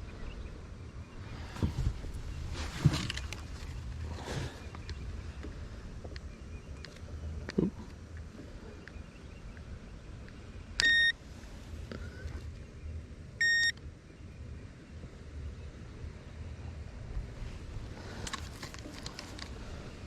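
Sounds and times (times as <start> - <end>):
steady low rumble: 0.0 - 20.0
short electronic beeps: 10.8 - 11.2, 13.4 - 13.8.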